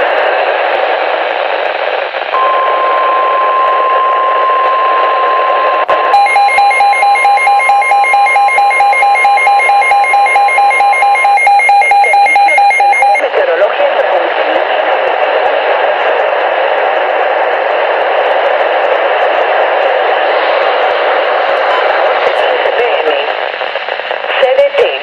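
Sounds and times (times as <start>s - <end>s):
radio static hiss: 0.0s - 6.1s, 9.6s - 25.0s
rapidly pulsing electronic beep: 2.4s - 13.3s
steady warning alarm tone: 2.4s - 13.3s.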